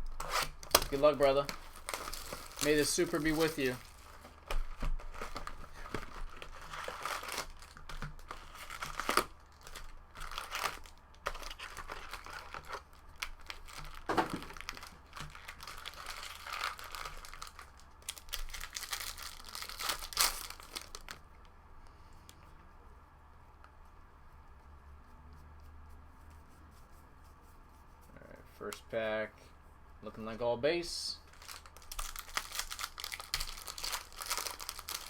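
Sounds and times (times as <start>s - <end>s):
plastic wrapping tearing and crinkling: 0.0s - 21.3s, 31.2s - 35.0s.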